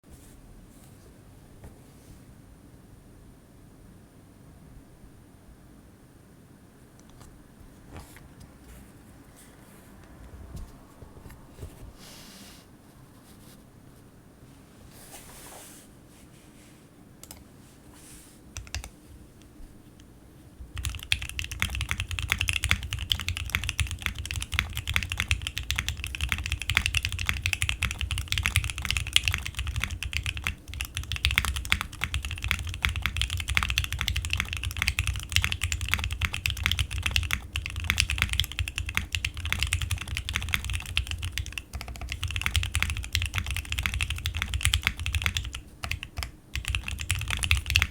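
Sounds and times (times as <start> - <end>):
fast typing on mechanical keyboard: 18.6 - 18.9, 20.7 - 47.9.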